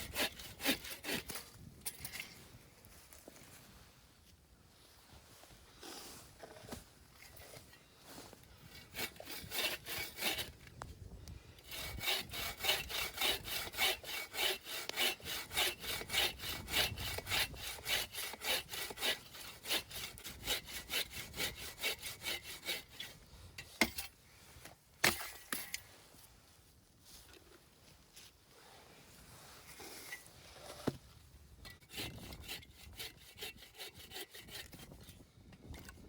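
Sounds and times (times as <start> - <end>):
hand saw cutting wood: 0.0 - 1.5, 8.7 - 10.6, 11.6 - 23.2, 31.7 - 35.2.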